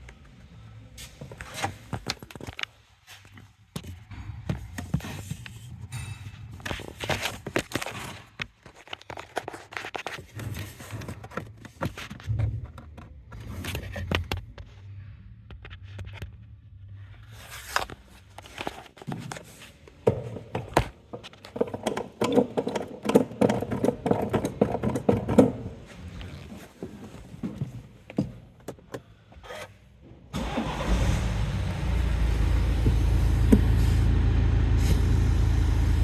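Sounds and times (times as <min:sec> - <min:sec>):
tools clicking and knocking: 0:20.0 - 0:25.7.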